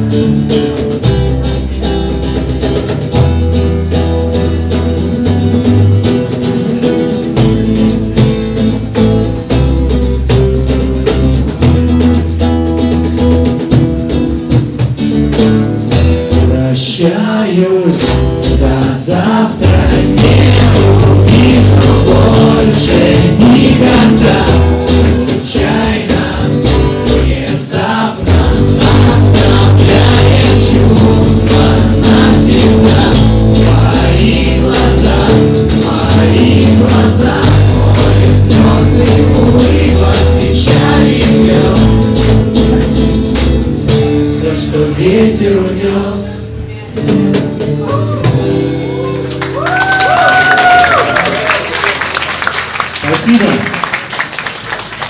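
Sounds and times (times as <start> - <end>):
hand percussion rhythm: 0.0 - 16.6, 17.9 - 44.4, 47.0 - 51.6
band music: 0.0 - 16.8, 17.9 - 51.9.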